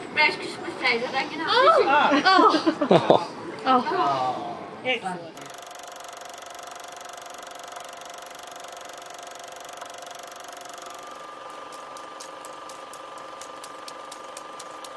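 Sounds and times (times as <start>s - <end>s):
small machine whirring hum: 0.0s - 14.9s
fast ticking: 5.4s - 14.9s.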